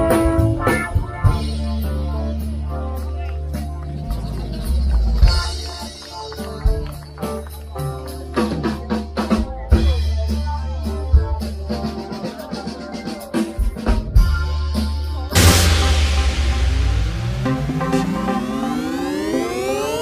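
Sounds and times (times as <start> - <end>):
electronic dance music: 15.4 - 20.0
rushing noise: 15.4 - 20.0.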